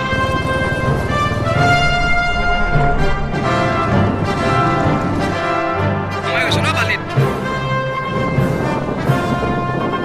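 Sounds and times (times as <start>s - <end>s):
orchestral music with brass: 0.0s - 10.0s.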